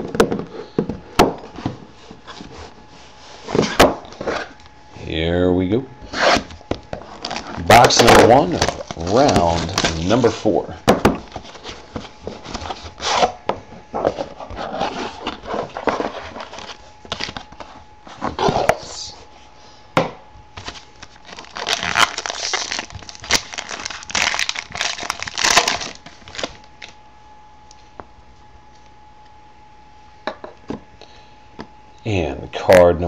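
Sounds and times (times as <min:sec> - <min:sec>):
cardboard rustling: 0:06.0 - 0:18.9, 0:20.6 - 0:26.9
plastic wrapper crinkling and tearing: 0:07.0 - 0:10.4, 0:20.6 - 0:27.0.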